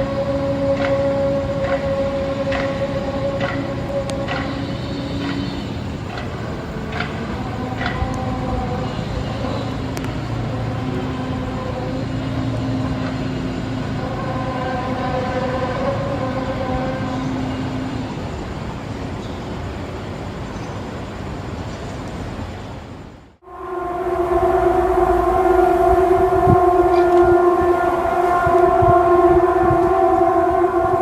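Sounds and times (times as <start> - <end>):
low droning hum: 0.0 - 18.6, 23.4 - 31.0
rumbling background: 23.4 - 31.0.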